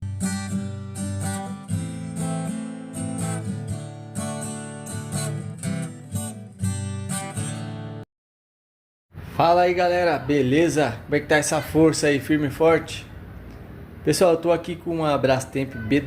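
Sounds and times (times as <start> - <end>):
strummed acoustic guitar: 0.0 - 8.0.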